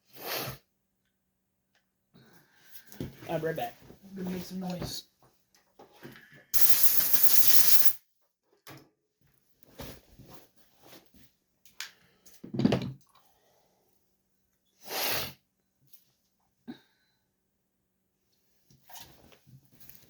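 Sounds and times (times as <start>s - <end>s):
hissing air blasts: 6.6s - 8.0s.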